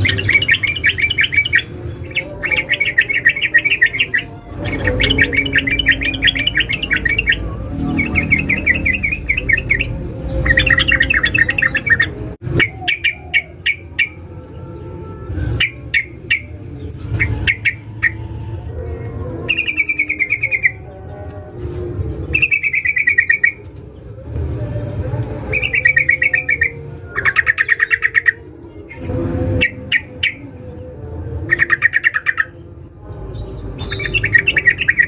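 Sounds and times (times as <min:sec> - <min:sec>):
bird chattering trills: 0:00.0 - 0:14.2
bird chirping: 0:00.0 - 0:21.2, 0:22.2 - 0:24.2, 0:25.4 - 0:30.9, 0:31.5 - 0:35.0.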